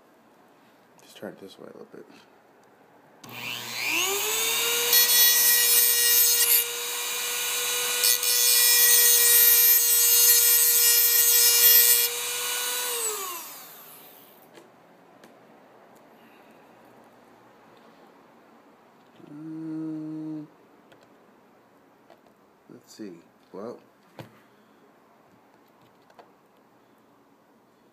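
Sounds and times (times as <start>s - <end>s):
rotary tool grinding metal rail: 3.3s - 14.3s.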